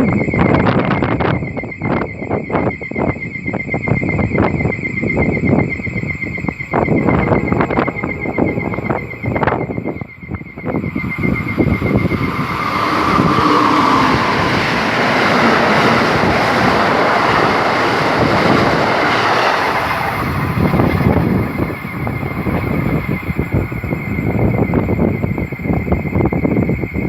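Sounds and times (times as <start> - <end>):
wind buffeting microphone: 0.0 - 27.0
train passing at speed: 5.4 - 27.0.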